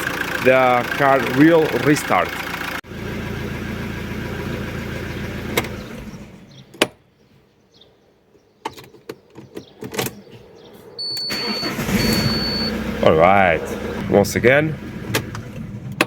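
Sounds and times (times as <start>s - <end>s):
diesel engine running: 0.0s - 6.6s, 11.0s - 16.0s.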